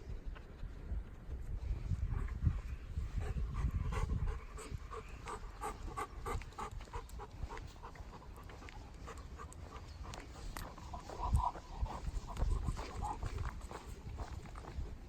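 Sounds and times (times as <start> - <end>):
dog panting: 3.0 - 15.0.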